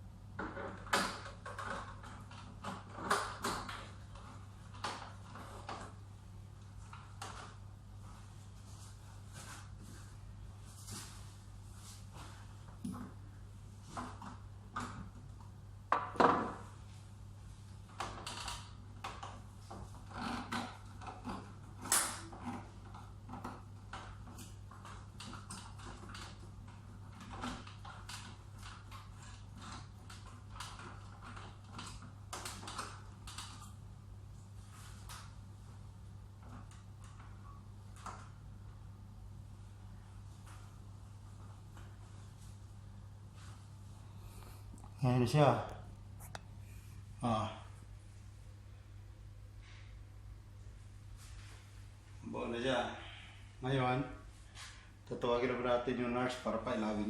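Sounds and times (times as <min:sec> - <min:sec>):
steady low hum: 0:00.0 - 0:57.0.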